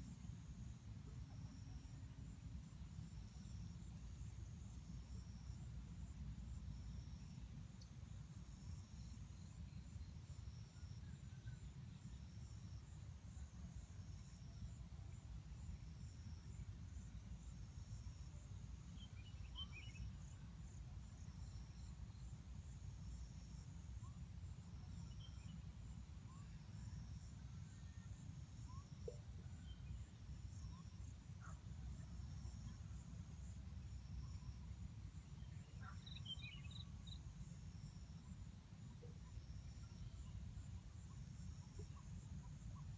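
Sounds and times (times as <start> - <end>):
faint bird chirps: 18.8 - 20.5, 23.9 - 33.1, 33.8 - 38.4, 39.0 - 42.9.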